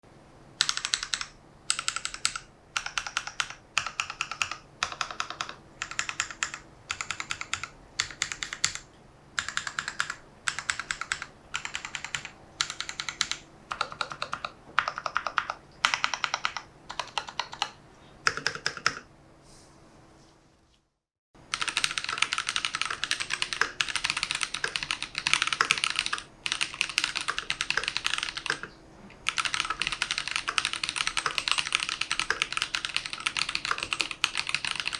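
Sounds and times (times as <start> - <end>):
typing on mechanical keyboard: 0.6 - 19.1, 21.5 - 34.9.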